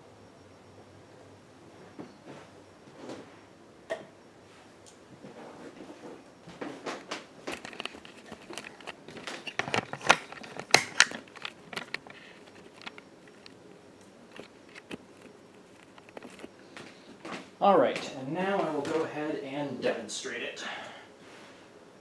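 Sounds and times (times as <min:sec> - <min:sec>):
handling clicks and rustling: 0:06.9 - 0:17.4.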